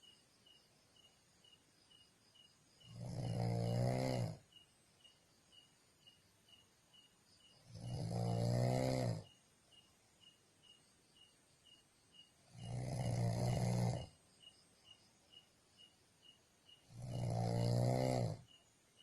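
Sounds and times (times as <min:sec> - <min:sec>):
person snoring: 0:02.9 - 0:04.4, 0:07.7 - 0:09.3, 0:12.6 - 0:14.1, 0:16.9 - 0:18.5.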